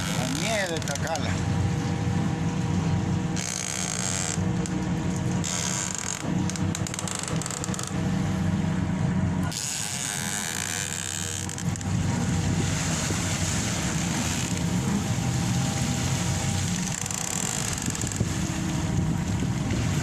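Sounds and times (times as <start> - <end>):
boat engine running: 0.0 - 20.0
wind buffeting microphone: 11.6 - 20.0.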